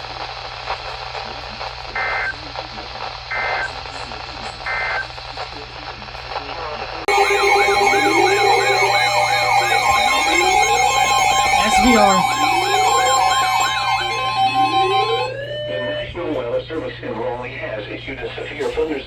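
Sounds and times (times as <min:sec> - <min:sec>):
siren-like alert tone: 0:07.1 - 0:15.6.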